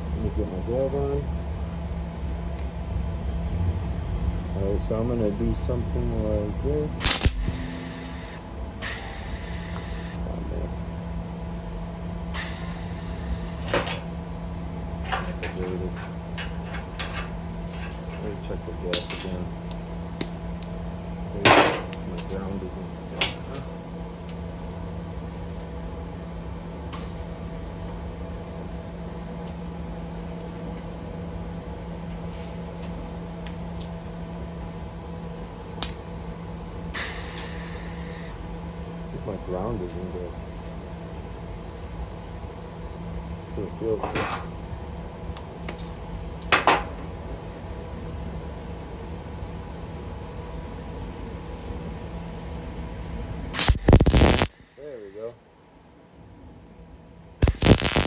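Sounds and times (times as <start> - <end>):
steady low hum: 0.0 - 58.0
welding arc hissing: 7.0 - 10.2, 12.3 - 14.1, 26.9 - 27.9, 37.0 - 38.4, 53.6 - 55.3, 57.4 - 58.0
welder humming: 7.0 - 11.4, 12.0 - 24.3, 26.9 - 28.0, 36.9 - 38.4, 53.5 - 55.4, 57.4 - 58.0.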